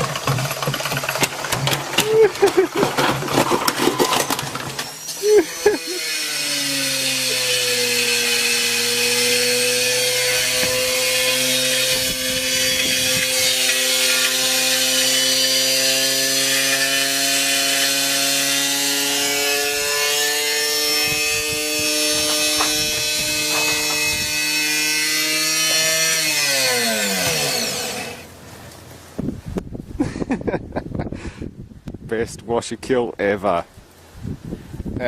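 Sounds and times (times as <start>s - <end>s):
brick grinding in washing machine: 0.0s - 6.0s, 21.2s - 26.1s
washing machine motor whine: 3.9s - 28.3s.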